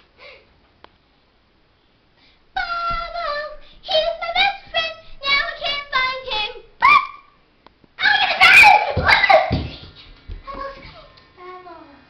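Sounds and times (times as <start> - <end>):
girl singing: 2.6 - 6.8.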